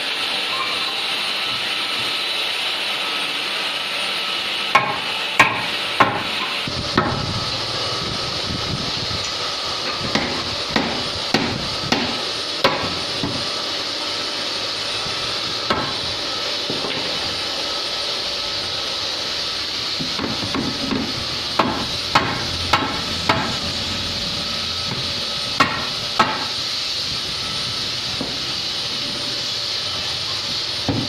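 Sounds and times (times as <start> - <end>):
workshop machinery hiss: 0.0 - 31.0
hammer striking wood: 4.7 - 7.2, 10.1 - 13.4, 15.7 - 15.9, 20.1 - 23.5, 25.6 - 26.5.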